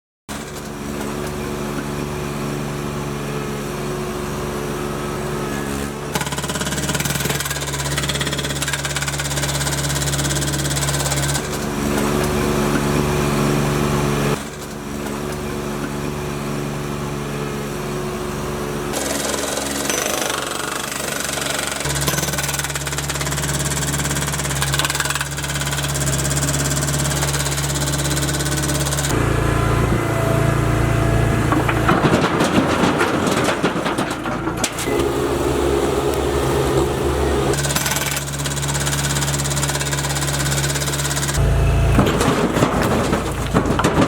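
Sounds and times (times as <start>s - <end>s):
small engine running: 0.4s - 32.0s, 34.9s - 43.4s
jackhammer hammering: 5.9s - 12.8s, 18.9s - 44.0s.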